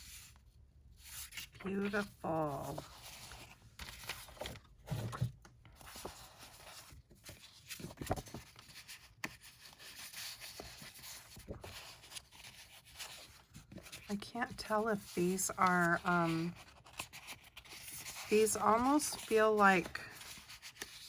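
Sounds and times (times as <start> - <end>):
paper rustling and sliding: 0.0 - 21.0.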